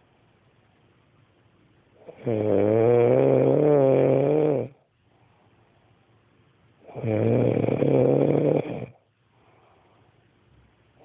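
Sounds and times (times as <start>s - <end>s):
woman snoring: 2.1s - 4.8s, 6.9s - 9.0s.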